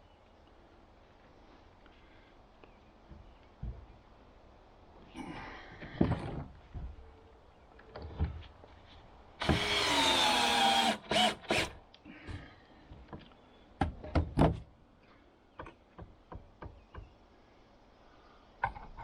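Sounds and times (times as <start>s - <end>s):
power drill running: 9.4s - 11.7s.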